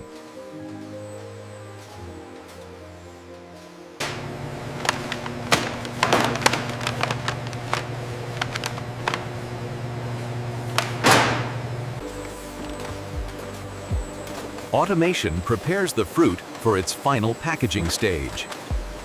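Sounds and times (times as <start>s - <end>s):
machinery humming: 0.0s - 19.0s
clicks and clatters: 4.0s - 9.4s.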